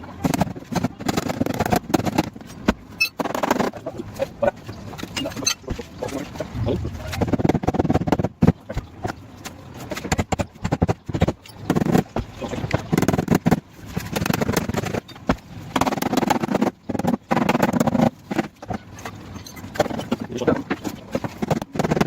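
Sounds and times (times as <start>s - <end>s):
men talking: 5.2s - 7.4s, 20.2s - 20.8s.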